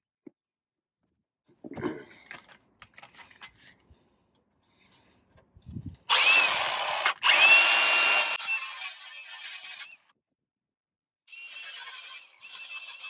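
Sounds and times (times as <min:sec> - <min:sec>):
power tool whining: 0:06.1 - 0:09.9.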